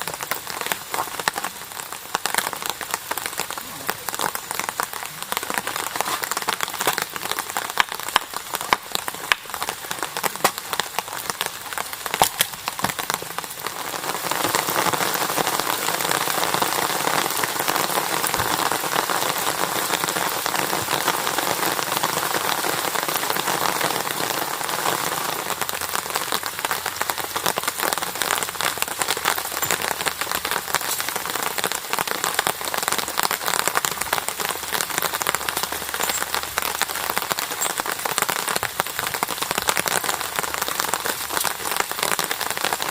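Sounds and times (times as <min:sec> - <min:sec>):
heavy rain falling: 0:00.0 - 0:42.9.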